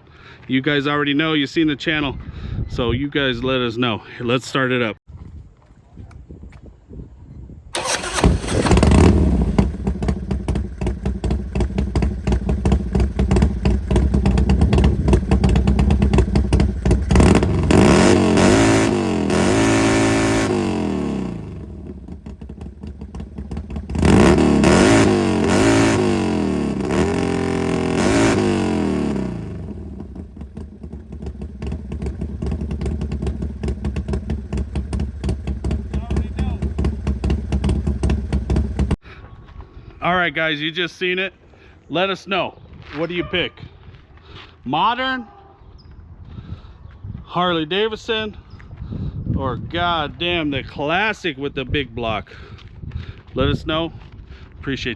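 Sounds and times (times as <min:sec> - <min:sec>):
motorcycle engine idling and revving: 0:07.8 - 0:39.0.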